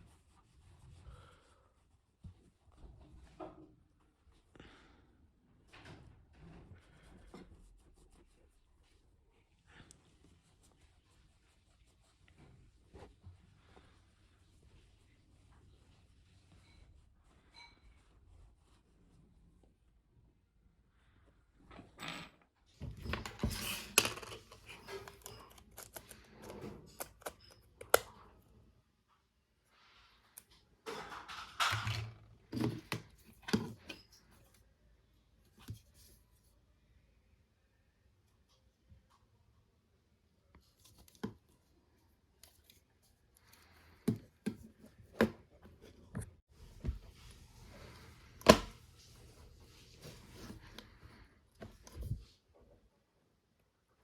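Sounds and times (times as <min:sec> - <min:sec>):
small clicks taps and scraping: 0:23.2 - 0:28.2.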